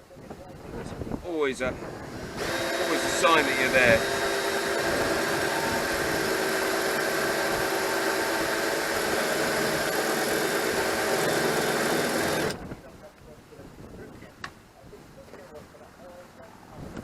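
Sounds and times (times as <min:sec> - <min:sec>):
electric drill cutting metal: 0:02.0 - 0:12.6.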